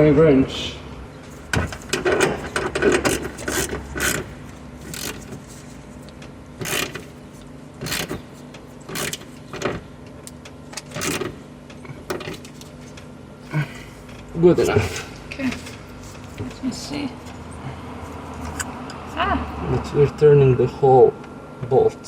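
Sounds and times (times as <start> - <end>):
ratchet wrench ratcheting: 2.8 - 5.4, 6.6 - 7.2, 7.8 - 8.2, 8.8 - 9.4.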